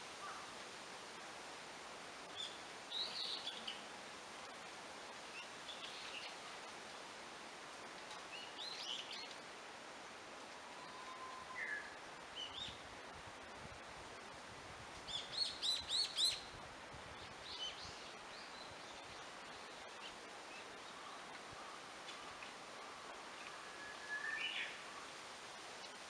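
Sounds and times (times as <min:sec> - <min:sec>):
background hiss: 0:00.0 - 0:26.0
bird chirps and twittering: 0:23.4 - 0:24.8.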